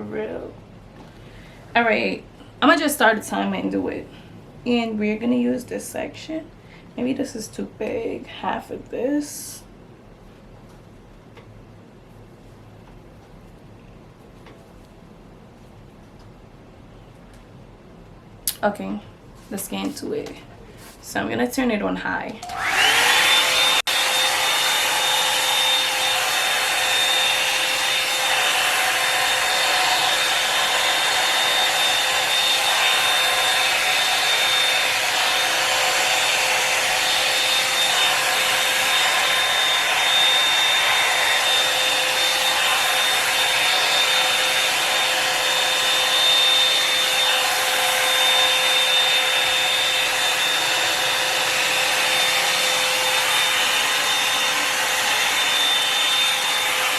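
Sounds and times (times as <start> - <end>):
hair dryer blowing air: 22.2 - 56.9
fan motor whine: 22.4 - 56.9.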